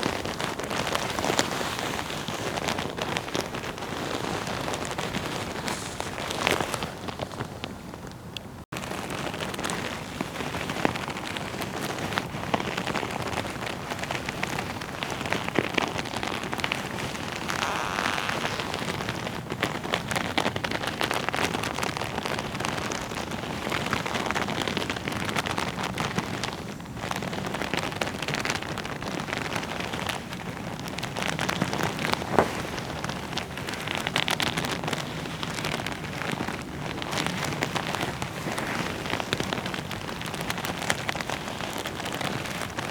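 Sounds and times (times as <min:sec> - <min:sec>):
leather jacket rustling: 0:00.1 - 0:07.9, 0:15.2 - 0:19.6, 0:30.6 - 0:42.6.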